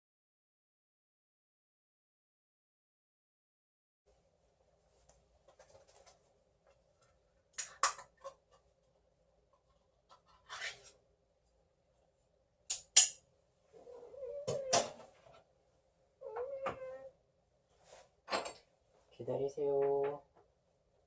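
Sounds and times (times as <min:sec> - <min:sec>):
cat meowing: 0:13.8 - 0:15.0, 0:16.2 - 0:17.1.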